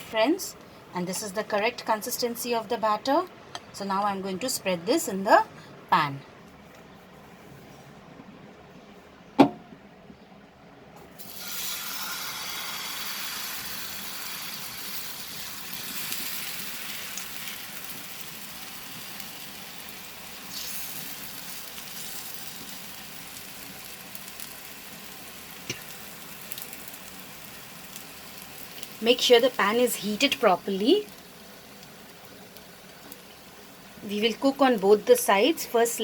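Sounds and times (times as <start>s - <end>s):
sharp knock: 9.4s - 9.7s
batter sizzling in a pan: 11.2s - 36.0s.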